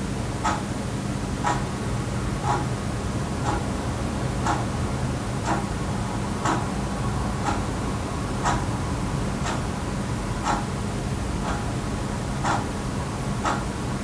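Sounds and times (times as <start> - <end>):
wall clock ticking: 0.4 - 0.6, 1.4 - 1.6, 2.4 - 2.7, 4.4 - 4.7, 5.4 - 5.6, 6.4 - 6.6, 7.4 - 7.6, 8.4 - 8.6, 9.4 - 9.6, 10.4 - 10.7, 11.4 - 11.6, 12.4 - 12.7, 13.4 - 13.7.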